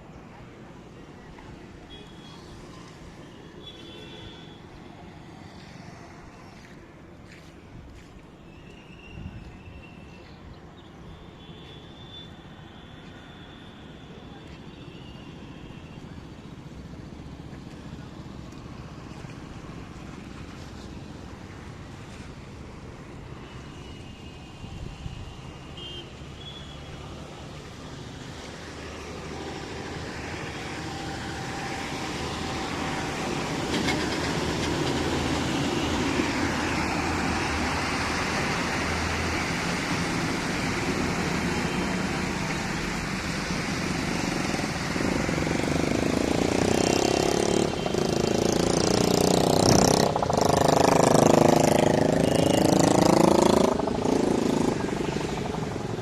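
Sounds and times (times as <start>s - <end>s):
motor vehicle engine approaching: 29.0s - 56.0s.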